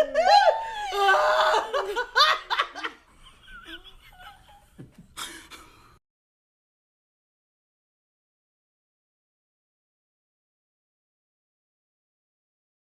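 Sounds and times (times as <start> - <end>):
woman laughing: 0.0 - 5.7.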